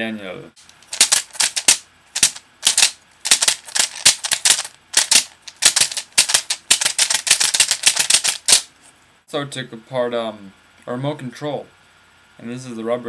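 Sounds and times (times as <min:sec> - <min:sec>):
plastic keycaps clattering: 0:00.6 - 0:08.7.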